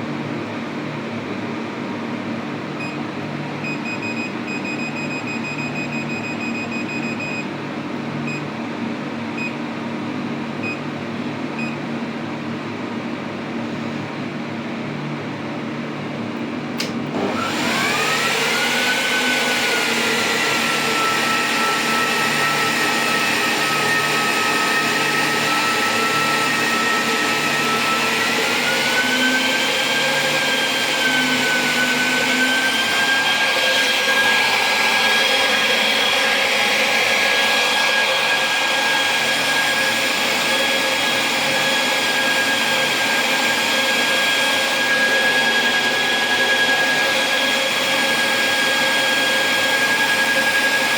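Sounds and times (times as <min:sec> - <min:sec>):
electric fan motor whining: 0:16.8 - 0:50.9.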